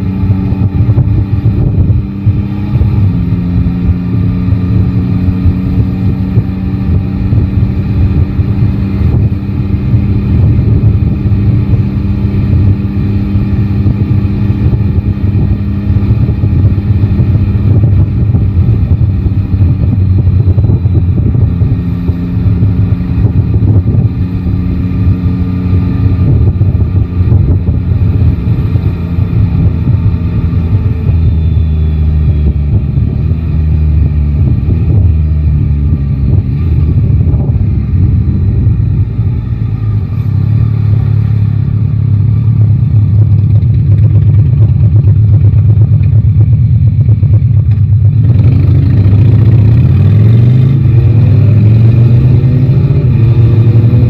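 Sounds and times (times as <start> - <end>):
wind buffeting microphone: 0.0 - 39.6
motorcycle engine running: 0.0 - 54.0.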